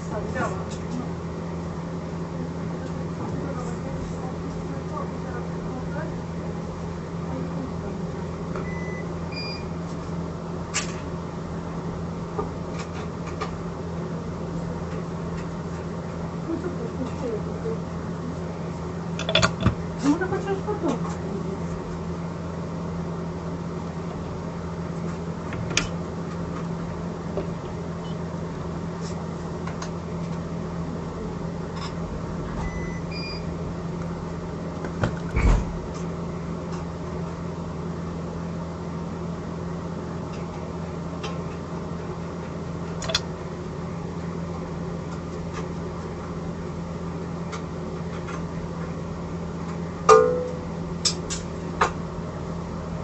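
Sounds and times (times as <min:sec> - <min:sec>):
low machine hum: 0:00.0 - 0:53.0.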